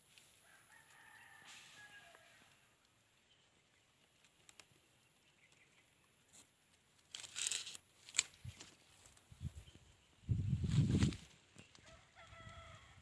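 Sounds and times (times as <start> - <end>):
faint clicks: 4.2 - 5.7
rustling: 6.3 - 9.3.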